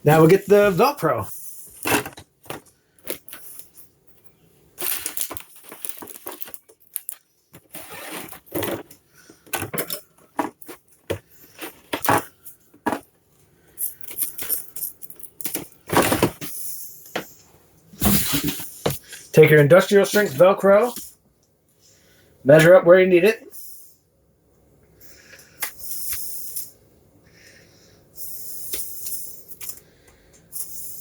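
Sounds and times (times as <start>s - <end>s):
objects handled and set down: 1.7s - 13.1s, 13.9s - 19.3s.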